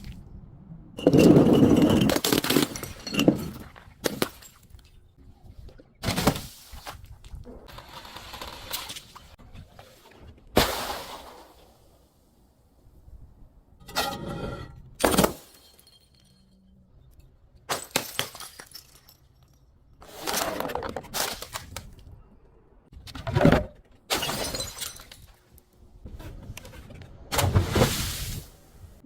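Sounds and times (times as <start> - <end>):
glass smashing and crunching: 17.7 - 19.6, 24.1 - 25.4.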